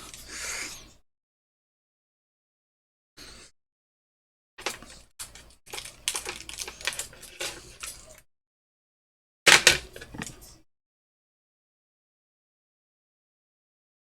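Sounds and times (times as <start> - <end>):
metal tools clicking and scraping: 4.6 - 8.2.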